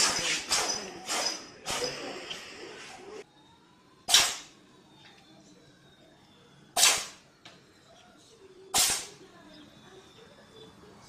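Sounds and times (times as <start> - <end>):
cat sneezing: 8.8 - 9.1.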